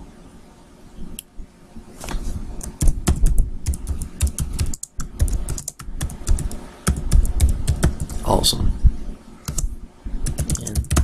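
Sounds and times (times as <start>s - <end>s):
computer keyboard typing: 2.6s - 8.2s, 9.5s - 11.0s.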